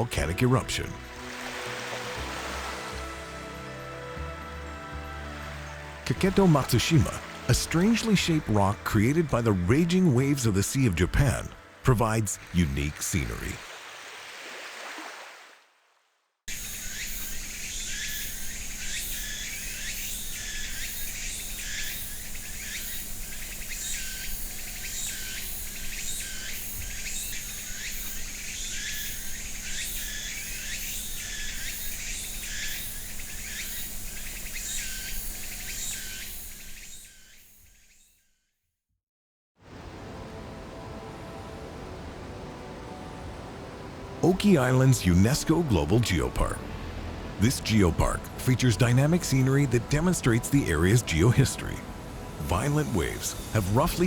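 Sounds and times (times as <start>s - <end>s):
birds chirping: 0.0s - 13.6s, 16.5s - 38.2s, 43.4s - 54.0s
insects chirping: 16.5s - 38.3s, 46.5s - 54.0s.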